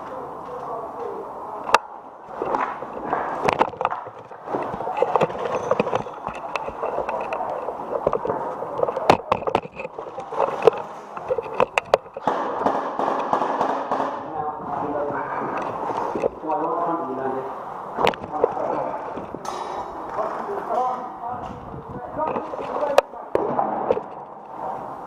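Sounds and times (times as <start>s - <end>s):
continuous rustling noise: 0.0s - 25.0s
airsoft gunshots: 12.2s - 14.3s.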